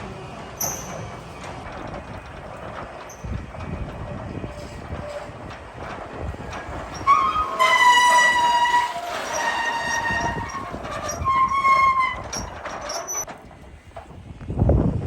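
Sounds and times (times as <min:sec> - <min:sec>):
metal squealing on metal: 0:06.4 - 0:13.3.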